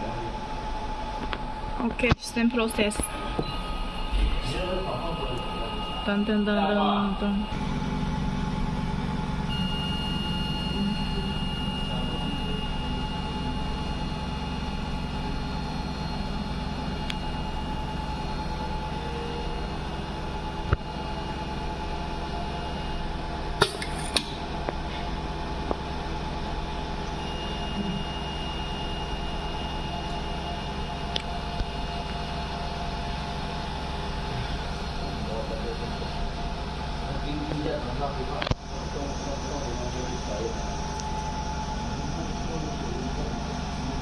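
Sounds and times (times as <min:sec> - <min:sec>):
high steady whine: 0:00.0 - 0:44.0
machine mechanical hum: 0:00.0 - 0:44.0.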